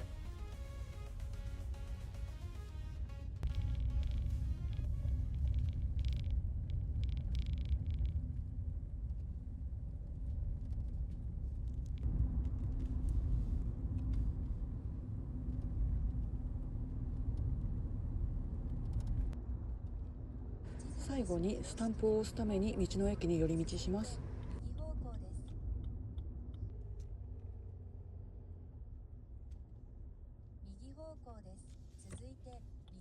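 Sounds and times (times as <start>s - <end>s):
road noise: 0.0s - 30.7s
car engine rumble: 0.0s - 31.1s.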